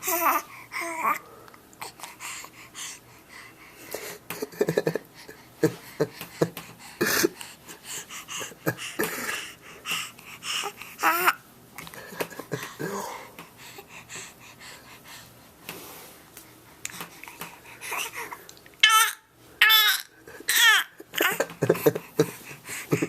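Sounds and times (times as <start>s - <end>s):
baby vocalizing: 9.1s - 11.4s.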